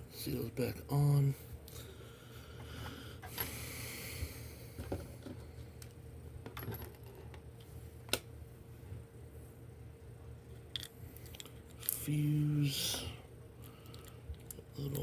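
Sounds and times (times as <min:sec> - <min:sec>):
steady low hum: 0:00.0 - 0:15.0.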